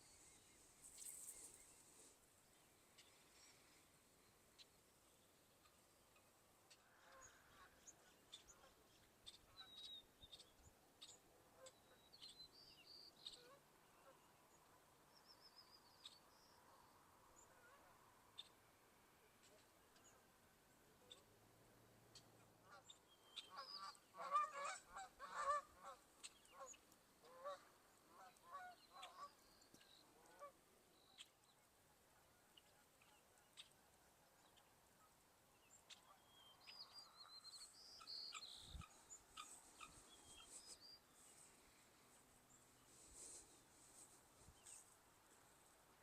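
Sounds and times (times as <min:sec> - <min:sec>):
geese honking: 0:23.5 - 0:29.3
high thin bird calls: 0:37.6 - 0:41.8.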